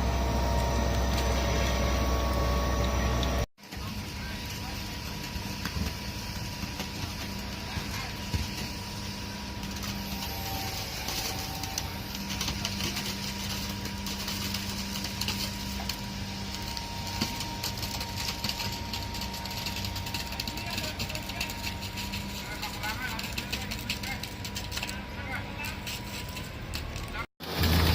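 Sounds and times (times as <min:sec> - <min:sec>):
heavy machinery engine running: 0:00.0 - 0:06.0, 0:26.6 - 0:27.9.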